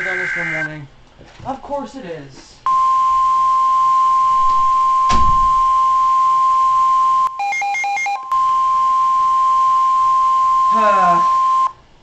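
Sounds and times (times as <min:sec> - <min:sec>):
steady alarm tone: 0:00.0 - 0:00.8, 0:02.7 - 0:11.7
thump: 0:04.4 - 0:05.6.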